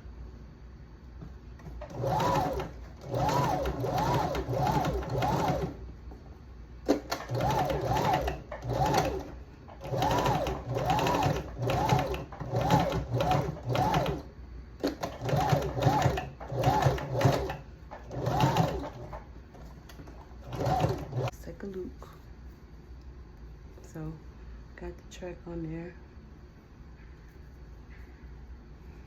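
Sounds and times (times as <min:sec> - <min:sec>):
sewing machine stitching: 0:01.6 - 0:05.8, 0:06.8 - 0:19.2, 0:20.0 - 0:21.3.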